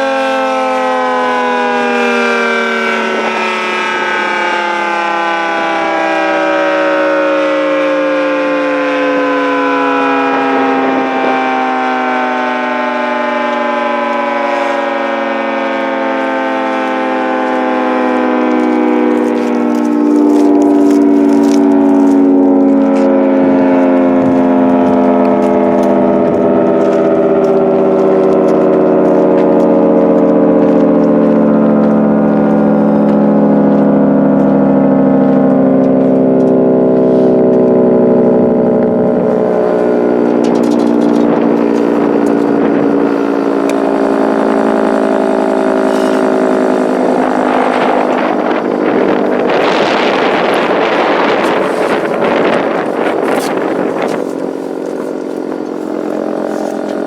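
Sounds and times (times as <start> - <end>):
three-tone fire siren: 0.0 - 57.0.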